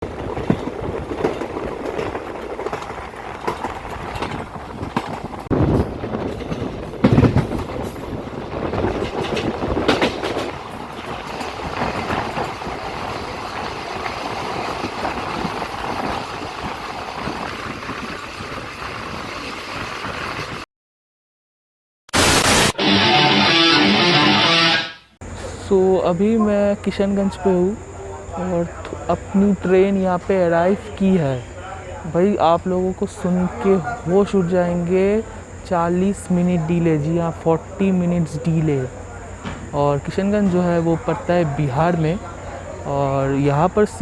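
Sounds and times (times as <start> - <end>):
train rumbling: 0.0 - 20.6
train wheels clattering over rails: 0.0 - 20.6.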